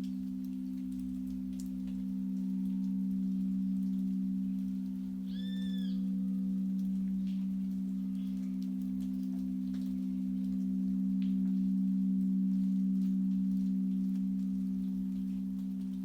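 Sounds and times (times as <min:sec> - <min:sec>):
crystal singing bowls ringing: 0:00.0 - 0:16.0.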